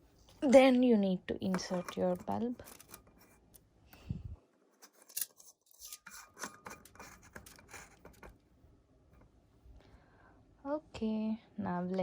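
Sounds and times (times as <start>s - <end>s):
lamp parts clicking and scraping: 1.4s - 4.1s, 4.7s - 8.5s.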